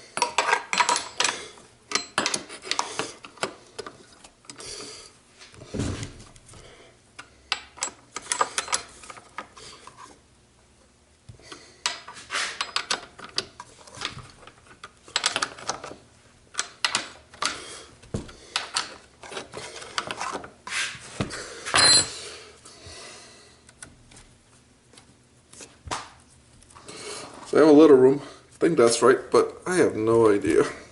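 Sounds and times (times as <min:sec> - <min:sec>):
metal chainsaw parts clinking: 0:00.2 - 0:02.8, 0:21.7 - 0:22.2.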